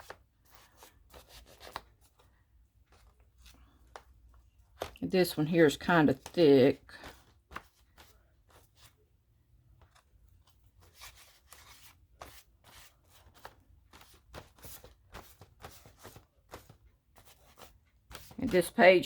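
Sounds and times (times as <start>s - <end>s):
magazine paper crinkling: 9.8s - 18.8s.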